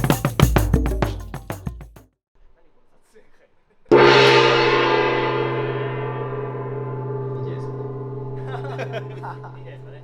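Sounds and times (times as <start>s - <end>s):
gong ringing: 3.9s - 10.0s.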